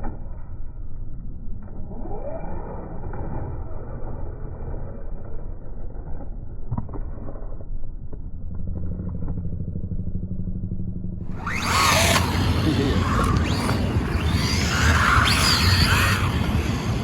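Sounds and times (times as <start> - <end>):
rc car rumbling on pavement: 8.5 - 17.0.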